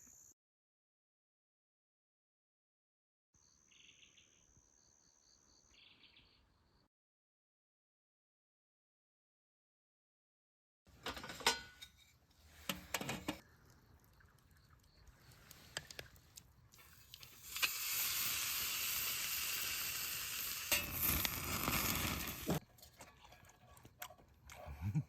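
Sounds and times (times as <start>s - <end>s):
food sizzling in a pan: 16.8s - 22.6s.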